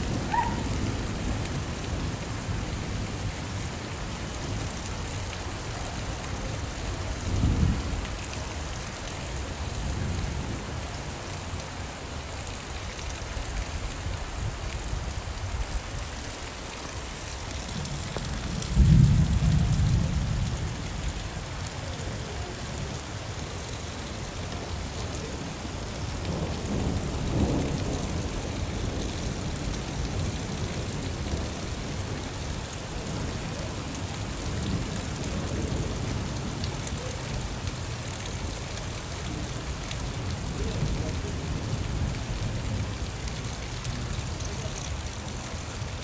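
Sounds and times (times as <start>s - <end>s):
steady rain: 0.0s - 46.0s
thunder clap and rumble: 17.9s - 20.7s, 26.2s - 32.2s.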